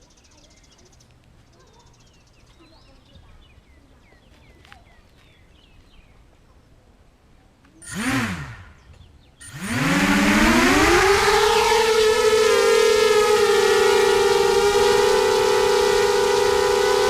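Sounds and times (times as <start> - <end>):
bird chirps: 0.0 - 6.2
quadcopter motors whining: 7.8 - 17.0.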